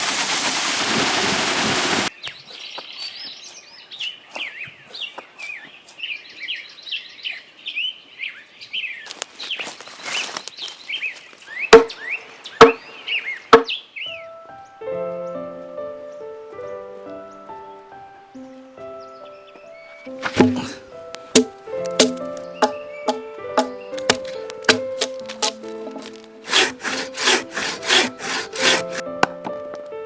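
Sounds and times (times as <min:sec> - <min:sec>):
loud hiss: 0:00.0 - 0:02.1
small birds chirping: 0:02.1 - 0:29.0
sharp wooden knocks: 0:11.7 - 0:12.0, 0:12.6 - 0:12.8, 0:13.5 - 0:13.8, 0:20.2 - 0:29.6.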